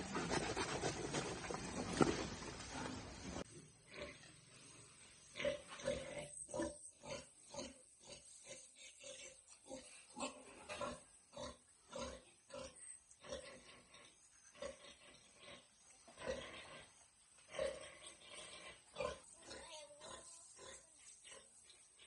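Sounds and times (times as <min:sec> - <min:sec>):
pigs grunting and squealing: 0:05.2 - 0:22.0.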